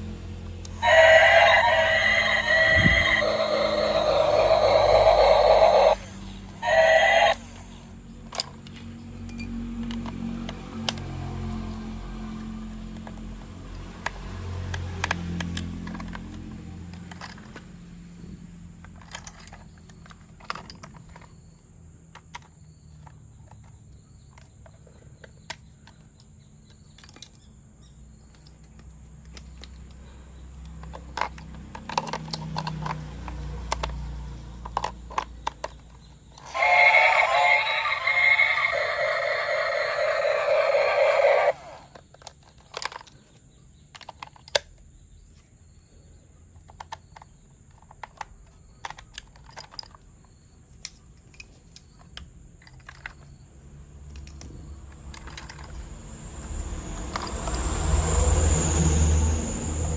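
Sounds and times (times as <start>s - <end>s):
plastic toy parts clicking: 0.6s - 6.0s, 8.2s - 10.2s, 14.0s - 17.7s, 18.8s - 21.4s, 22.1s - 27.5s, 28.3s - 30.0s, 30.6s - 44.8s, 46.6s - 50.1s, 50.8s - 53.3s, 54.1s - 55.9s.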